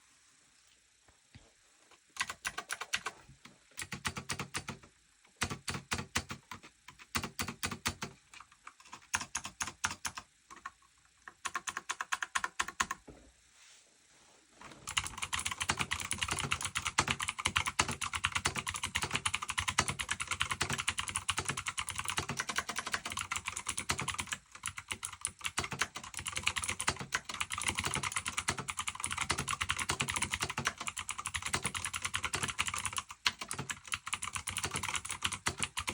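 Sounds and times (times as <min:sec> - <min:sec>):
mechanical keyboard keys clacking: 0:02.2 - 0:03.2, 0:03.8 - 0:04.8, 0:05.4 - 0:13.0, 0:14.9 - 0:35.9.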